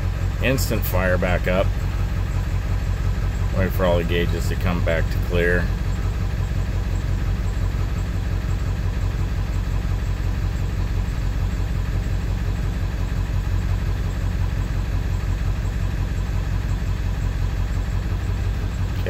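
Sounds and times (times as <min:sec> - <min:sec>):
diesel engine idling roughly: 0:00.0 - 0:19.0
man talking: 0:00.4 - 0:01.7, 0:03.5 - 0:05.8.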